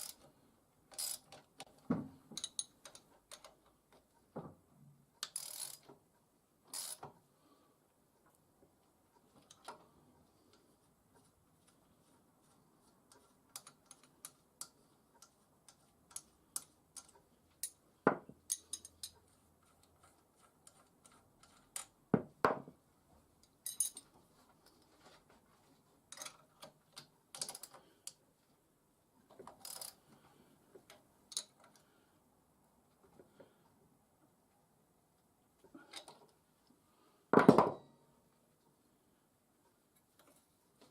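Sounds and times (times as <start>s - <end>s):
hand tools clicking and tapping: 13.5s - 21.9s.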